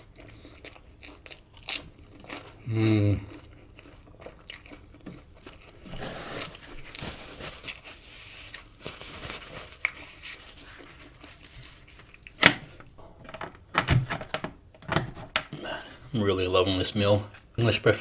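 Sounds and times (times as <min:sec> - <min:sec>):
close chewing and mouth sounds: 0:00.0 - 0:13.0, 0:17.0 - 0:18.0.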